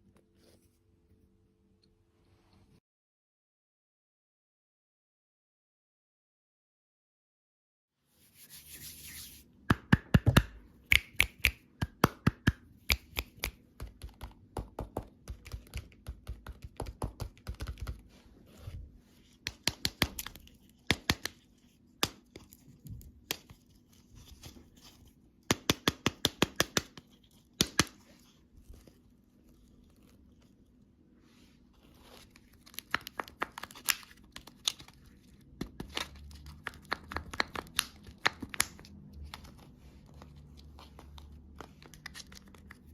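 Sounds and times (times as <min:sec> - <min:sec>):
candy packaging crinkling: 0:31.8 - 0:39.6.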